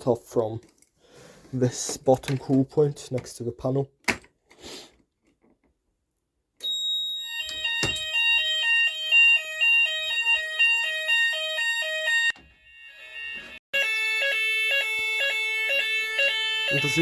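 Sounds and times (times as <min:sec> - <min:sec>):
fire alarm sounders: 0:06.6 - 0:17.0.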